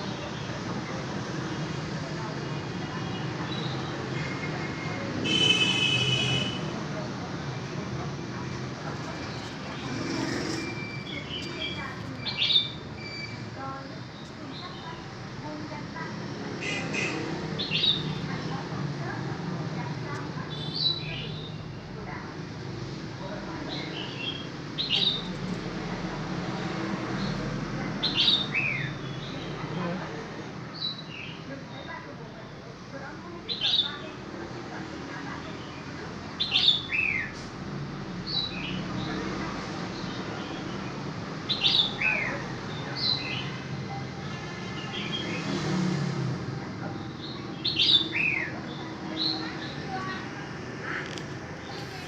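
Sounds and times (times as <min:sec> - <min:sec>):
bird chirping: 0:09.0 - 0:13.5
bird chirping and whistling: 0:12.2 - 0:13.4.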